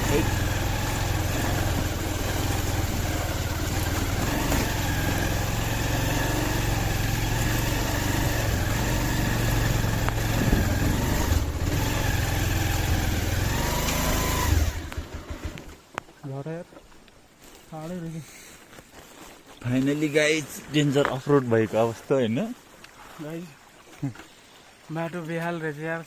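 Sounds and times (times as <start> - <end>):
motorcycle engine running: 0.0 - 15.8.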